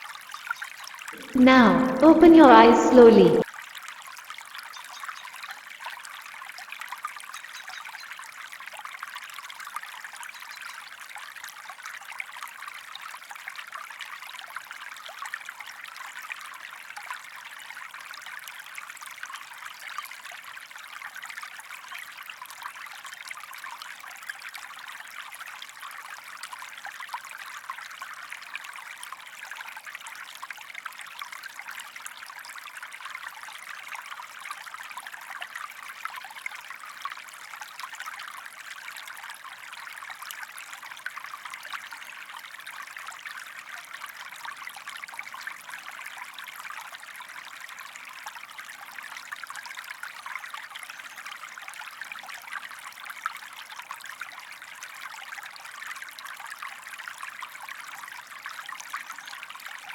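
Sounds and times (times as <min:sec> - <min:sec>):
stream trickling: 0:04.4 - 0:59.9.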